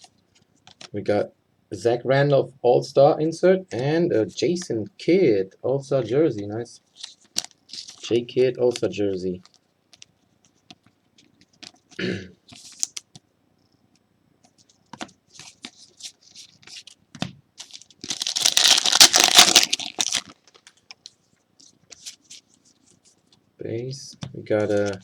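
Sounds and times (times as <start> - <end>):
cards clicking and rustling: 7.0 - 13.2, 14.4 - 23.4, 24.1 - 25.0
foil wrapper tearing and crinkling: 17.6 - 20.7.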